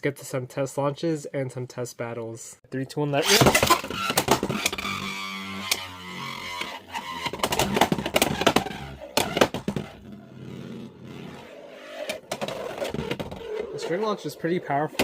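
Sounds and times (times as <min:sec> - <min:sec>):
spinning top whirring hum: 0:03.2 - 0:15.0.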